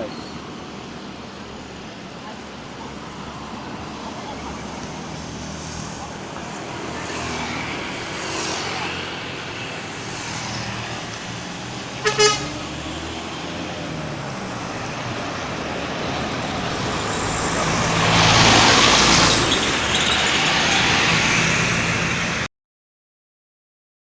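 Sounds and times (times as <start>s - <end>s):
road noise: 0.0s - 22.5s
vehicle passing close: 3.3s - 22.5s
vehicle horn toot: 12.0s - 12.6s.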